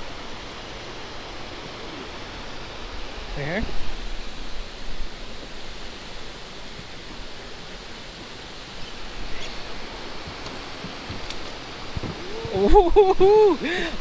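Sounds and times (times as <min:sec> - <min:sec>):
rain falling on water and boat: 0:00.0 - 0:14.0
faint ticks: 0:06.7 - 0:12.8.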